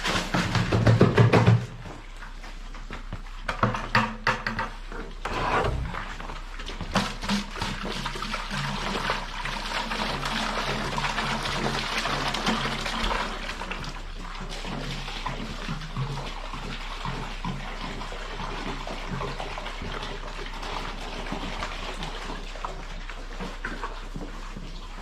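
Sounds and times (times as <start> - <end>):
water running steadily: 0.0 - 25.0.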